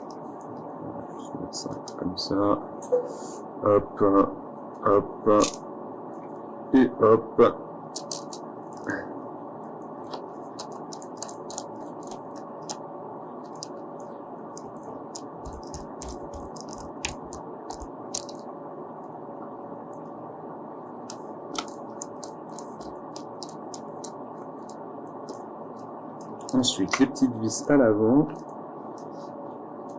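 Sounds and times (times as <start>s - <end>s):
steady background hiss: 0.0s - 29.9s.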